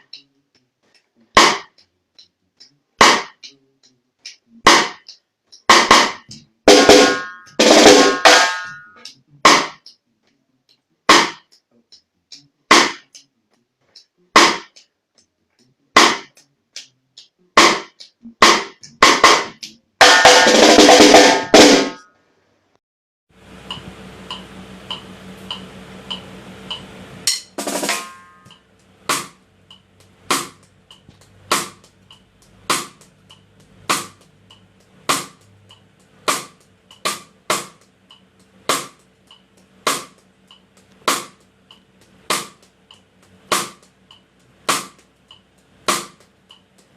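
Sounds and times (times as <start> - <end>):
snare drum strokes: 1.3 - 1.8, 3.0 - 3.6, 4.6 - 9.9, 11.1 - 11.5, 12.7 - 13.2, 14.4 - 14.8, 16.0 - 16.4, 17.6 - 22.1, 23.6 - 29.4, 30.0 - 43.9, 44.6 - 46.9
faint steady hum: 22.1 - 46.9.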